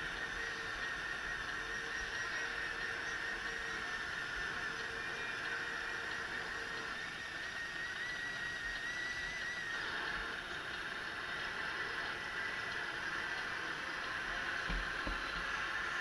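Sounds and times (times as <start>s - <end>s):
model truck electric drive whine: 0.0s - 16.0s
thin whistling tone: 0.2s - 10.2s.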